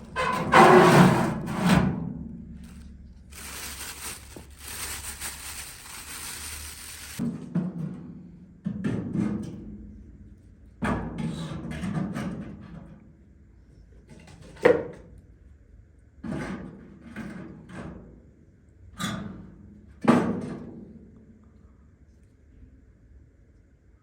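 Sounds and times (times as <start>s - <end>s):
handling noise: 2.6s - 7.2s.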